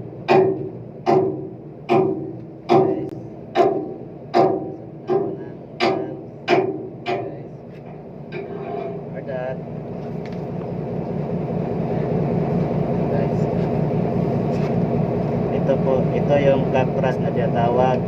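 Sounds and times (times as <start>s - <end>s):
hammer striking metal: 0.2s - 7.5s.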